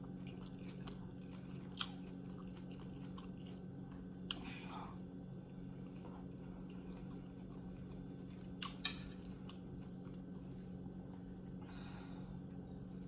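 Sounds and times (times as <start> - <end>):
person chewing: 0.0 - 5.0.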